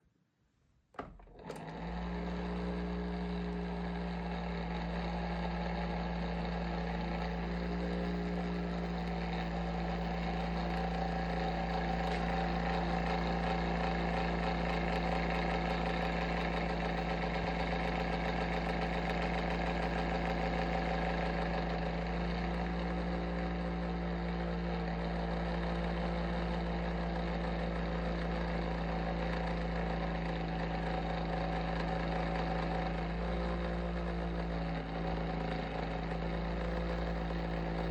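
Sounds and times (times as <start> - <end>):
heater fan motor hum: 1.2 - 23.8.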